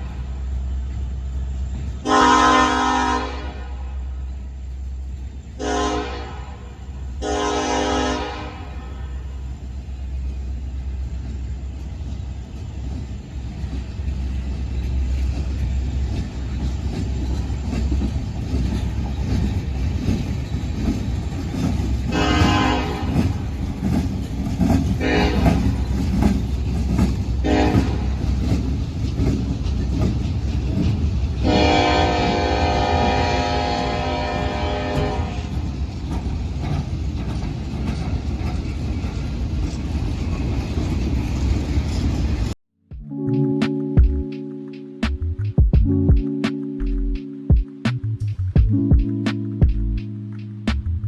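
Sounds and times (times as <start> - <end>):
diesel locomotive rumbling: 0.0 - 51.0
train air horn blasts: 2.0 - 4.2, 5.6 - 9.4, 22.0 - 23.6, 25.0 - 26.0, 27.4 - 28.3, 31.4 - 35.7.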